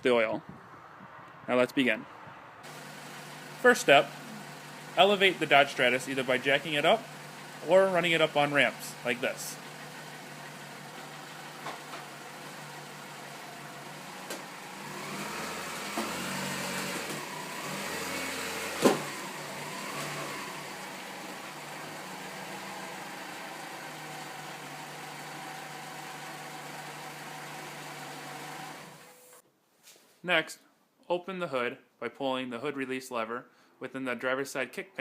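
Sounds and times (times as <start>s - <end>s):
car engine running: 2.6s - 29.2s.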